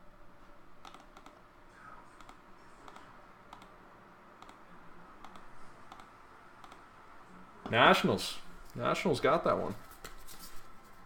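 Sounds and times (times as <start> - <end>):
computer mouse clicks: 0.8 - 1.4, 2.1 - 3.8, 4.4 - 4.6, 5.2 - 6.9.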